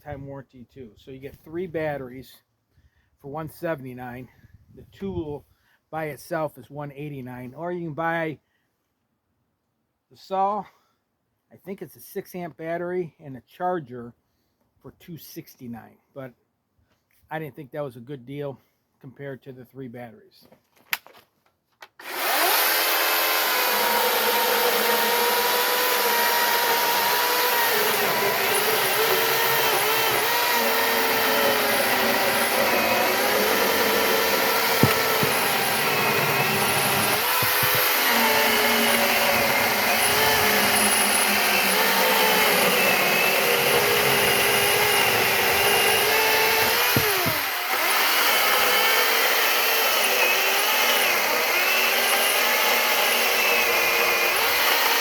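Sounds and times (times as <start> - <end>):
electric chainsaw cutting wood: 22.0 - 55.0.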